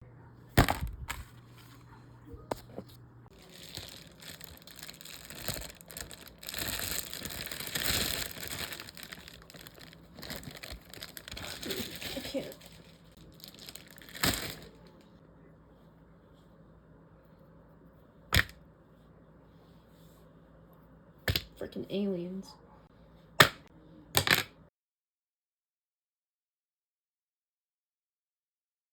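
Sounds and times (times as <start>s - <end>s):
rustling and crinkling: 0.6s - 15.2s.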